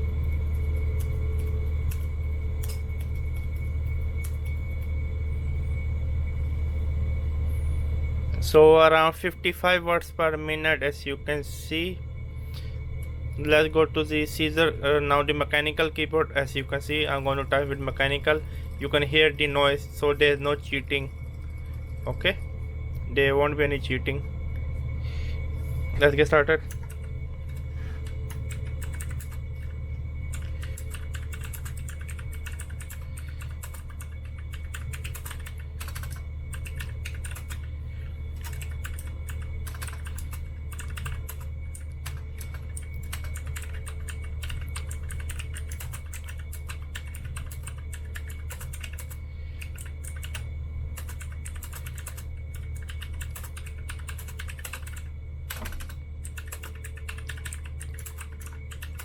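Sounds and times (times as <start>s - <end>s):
steady low hum: 0.0s - 59.0s
mechanical keyboard typing: 28.3s - 29.4s, 30.3s - 37.7s, 38.4s - 59.0s.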